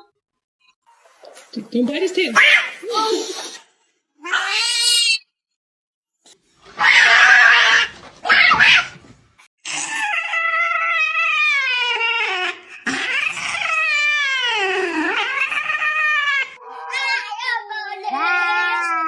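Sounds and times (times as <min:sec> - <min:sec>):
cat yowling: 0:04.2 - 0:05.2, 0:06.8 - 0:09.0, 0:09.7 - 0:19.0.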